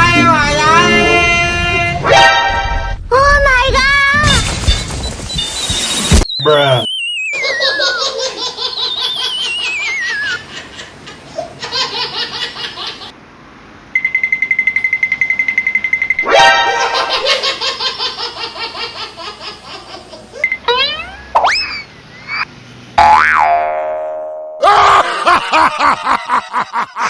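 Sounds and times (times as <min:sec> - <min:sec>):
high pulsing beep: 0:04.8 - 0:07.1, 0:14.0 - 0:16.7, 0:20.4 - 0:22.4
falling wavering whistle: 0:06.3 - 0:08.0
laughter: 0:07.4 - 0:13.1, 0:16.8 - 0:20.4, 0:24.6 - 0:27.0.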